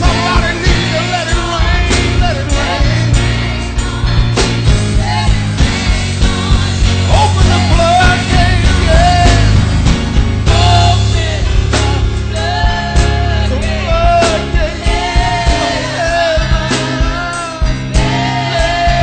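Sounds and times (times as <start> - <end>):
bass: 0.0 - 19.0
drum beats: 0.0 - 19.0.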